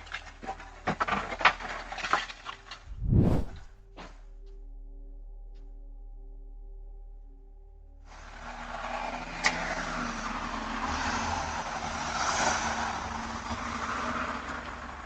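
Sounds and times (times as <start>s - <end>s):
road vehicle passing: 2.9s - 3.7s, 8.1s - 15.0s.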